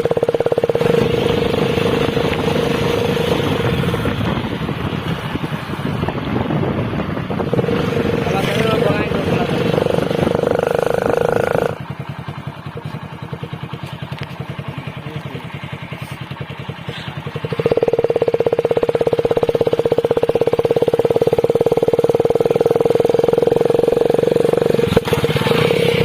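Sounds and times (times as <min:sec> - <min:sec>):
motorcycle engine running: 0:00.0 - 0:26.0.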